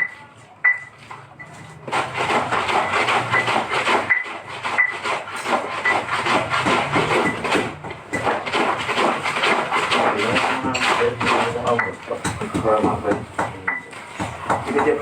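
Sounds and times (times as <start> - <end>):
laundry scrubbed by hand: 1.6 - 11.9.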